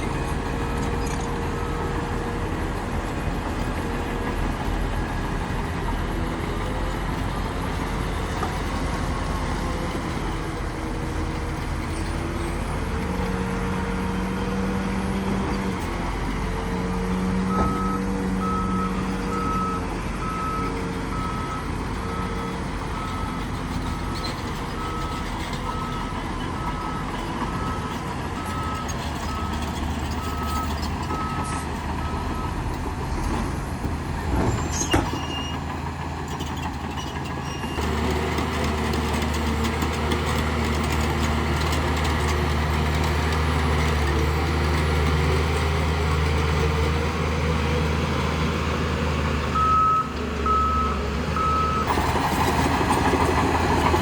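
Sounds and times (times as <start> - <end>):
bulldozer diesel engine revving: 0.0 - 54.0
reversing alarm beeping: 1.0 - 1.8, 17.2 - 24.2, 24.8 - 33.5, 49.6 - 52.0.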